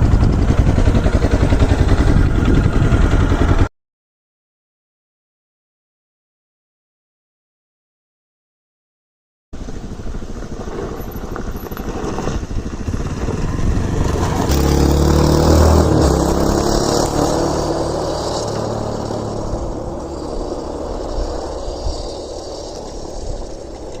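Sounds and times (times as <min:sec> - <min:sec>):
motorcycle engine revving: 0:00.0 - 0:03.7, 0:10.3 - 0:24.0.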